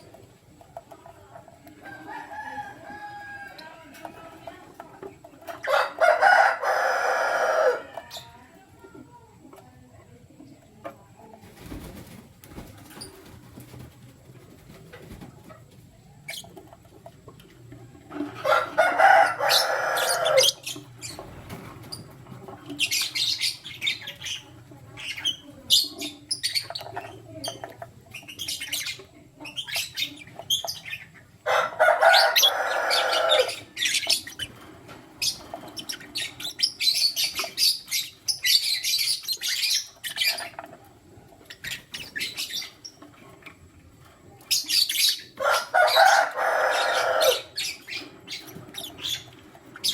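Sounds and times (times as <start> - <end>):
lovebirds chirping and chattering: 0.0 - 49.9
harsh bird calls: 18.4 - 22.0, 28.2 - 40.7.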